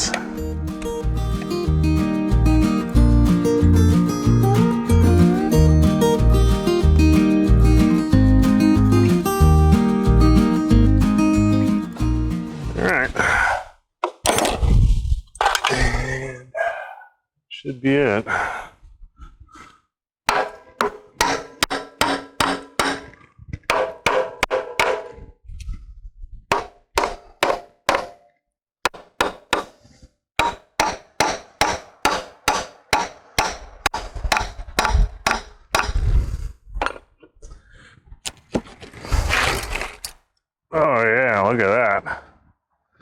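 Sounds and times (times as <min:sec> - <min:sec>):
hammer striking metal: 0:20.3 - 0:25.2, 0:26.5 - 0:28.3, 0:28.9 - 0:29.8, 0:30.4 - 0:36.0
heavy dull hammer thuds: 0:20.3 - 0:25.2, 0:26.5 - 0:28.2, 0:28.9 - 0:29.8, 0:30.4 - 0:36.0.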